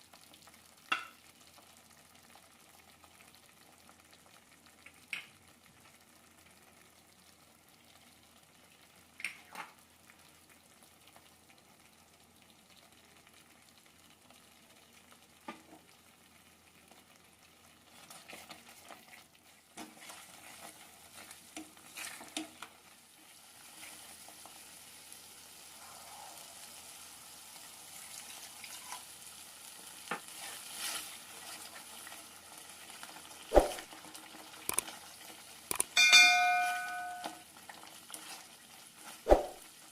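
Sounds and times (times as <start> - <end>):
sizzling hiss: 23.5 - 31.4
light clinks: 35.7 - 37.4
spoon scraping a pan: 35.7 - 37.4.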